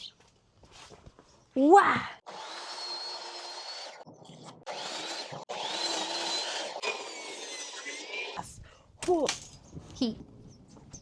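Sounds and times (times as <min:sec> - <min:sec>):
power tool whining on wood: 0:02.2 - 0:08.4.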